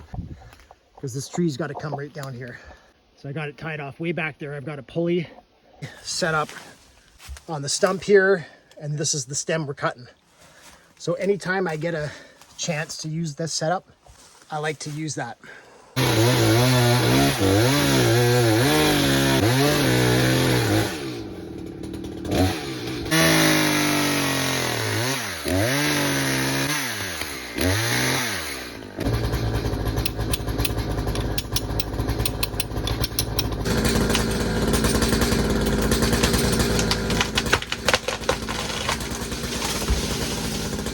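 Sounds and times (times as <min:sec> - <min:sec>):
chainsaw cutting wood: 0:16.0 - 0:40.9.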